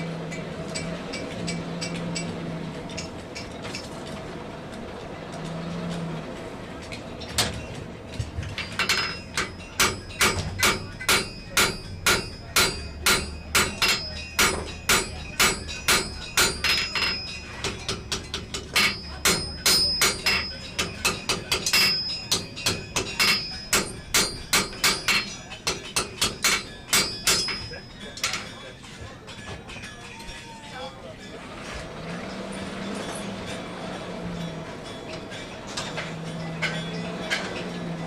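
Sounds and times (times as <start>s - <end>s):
hammer forging iron on anvil: 8.5s - 28.4s.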